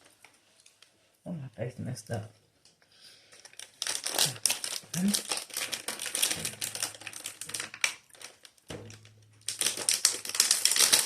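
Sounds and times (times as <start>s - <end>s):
plastic wrapper crackling: 3.3s - 11.0s.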